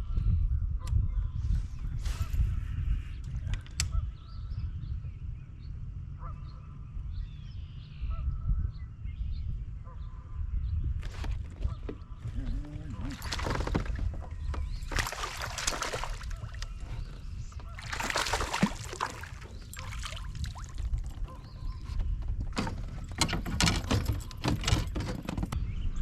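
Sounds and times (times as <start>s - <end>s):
water splashing against kayak: 11.2s - 25.5s.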